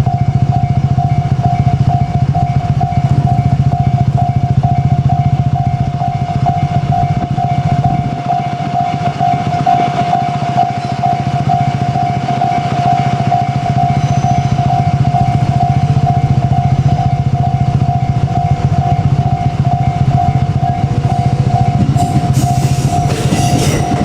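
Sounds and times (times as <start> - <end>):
level crossing alarm ringing: 0.0 - 24.0.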